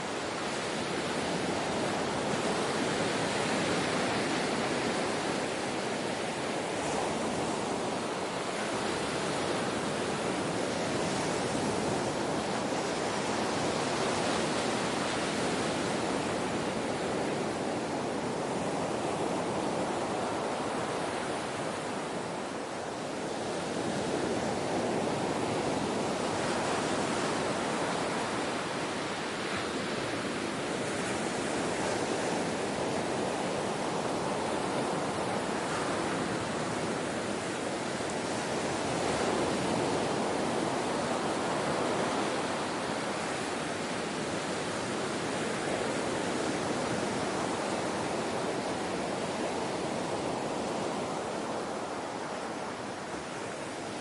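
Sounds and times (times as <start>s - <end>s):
ocean surf washing in: 0.0s - 54.0s.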